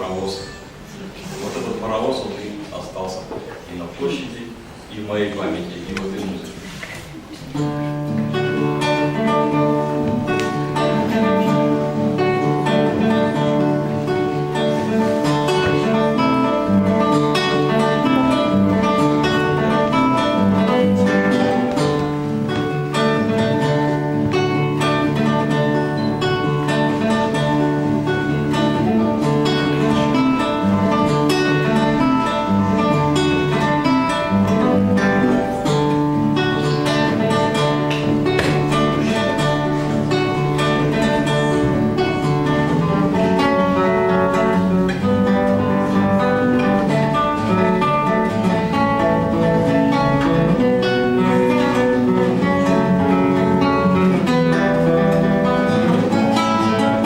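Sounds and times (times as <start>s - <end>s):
solo guitar playing: 5.7s - 57.0s.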